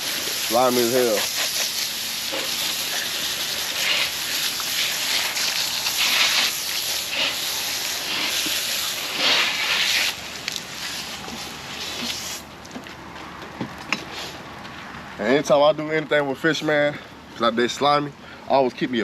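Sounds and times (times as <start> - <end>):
water spraying: 0.0 - 12.5.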